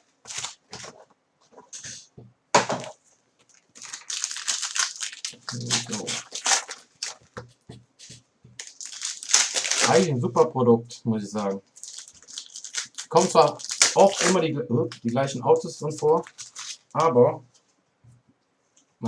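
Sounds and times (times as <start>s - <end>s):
foil wrappers crinkling: 0.2s - 1.0s, 3.4s - 7.4s, 8.6s - 10.1s, 11.7s - 17.2s.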